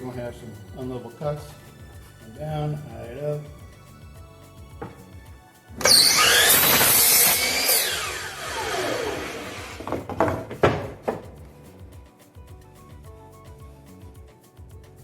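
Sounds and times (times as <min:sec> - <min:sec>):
wooden knocks: 0:04.7 - 0:05.2, 0:09.7 - 0:11.4
saw blade spinning down: 0:05.8 - 0:09.9
power saw cutting wood: 0:05.8 - 0:10.4.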